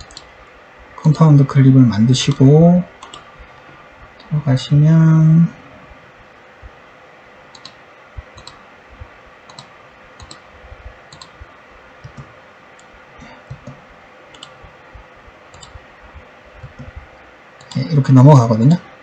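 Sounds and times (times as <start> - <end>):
computer mouse clicking: 0.0 - 0.3, 2.2 - 4.4, 7.5 - 17.9
faint room hiss: 0.0 - 19.0.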